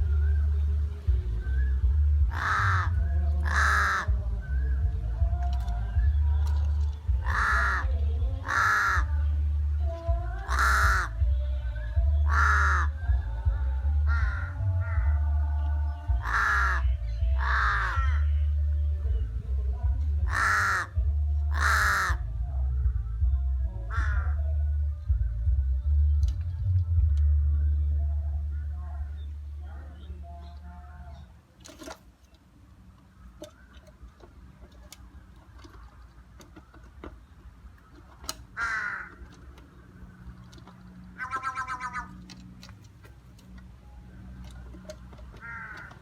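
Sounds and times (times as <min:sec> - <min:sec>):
steady low rumble: 0:00.0 - 0:31.5
crow cawing: 0:02.3 - 0:04.1, 0:07.2 - 0:09.2, 0:10.4 - 0:11.2, 0:12.3 - 0:13.0, 0:14.1 - 0:15.2, 0:16.2 - 0:18.3, 0:20.2 - 0:22.2, 0:23.9 - 0:24.4, 0:38.6 - 0:39.4, 0:41.2 - 0:42.3, 0:45.4 - 0:46.0.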